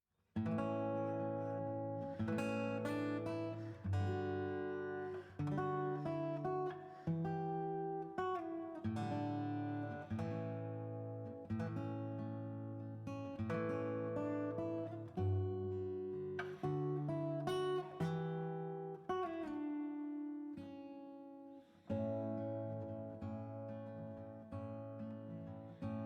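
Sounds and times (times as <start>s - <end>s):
acoustic guitar chords: 0.4s - 26.0s.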